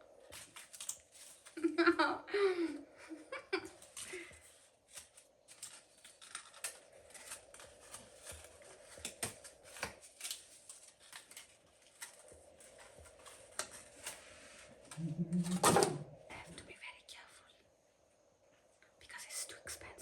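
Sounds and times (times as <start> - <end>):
packaging rustling: 0.2 - 1.8, 3.6 - 14.9.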